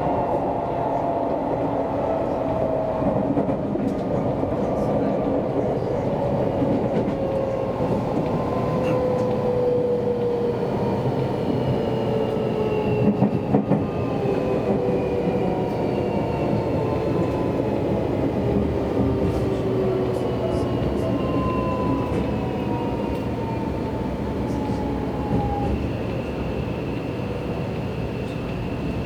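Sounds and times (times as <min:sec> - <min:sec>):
train wheels rumbling on rail: 0:00.0 - 0:29.0.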